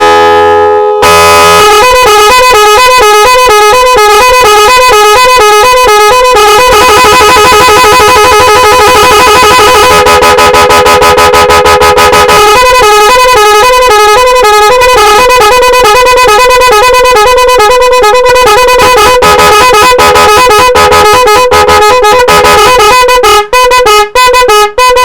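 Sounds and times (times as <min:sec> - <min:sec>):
electronic horn tones: 0:00.0 - 0:25.0.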